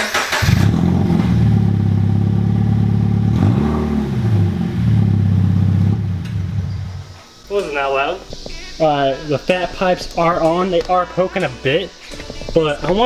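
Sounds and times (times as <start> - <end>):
engine cranking: 0.0 - 7.4
loud car engine running: 0.1 - 7.1.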